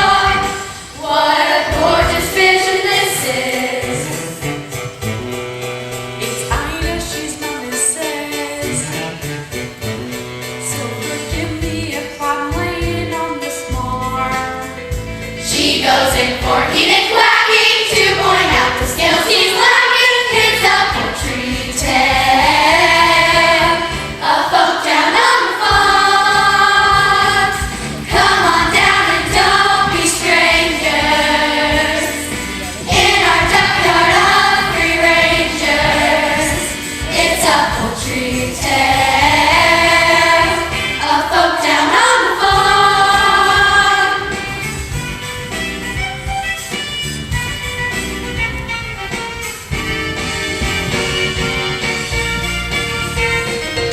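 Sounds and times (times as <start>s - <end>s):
group singing together: 0.0s - 4.4s, 15.4s - 44.6s
instrumental accompaniment: 0.0s - 53.9s.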